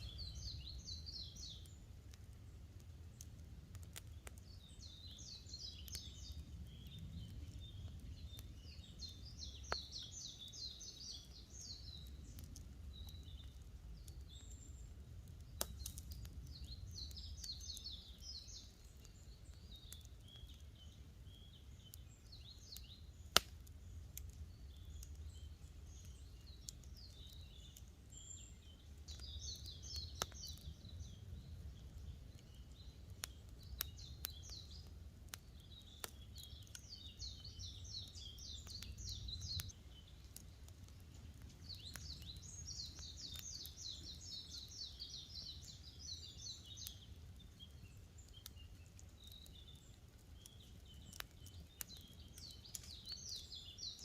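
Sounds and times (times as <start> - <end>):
campfire hissing: 0.0 - 54.0
campfire popping: 0.0 - 54.0
songbirds singing rattling phrases: 0.0 - 54.0.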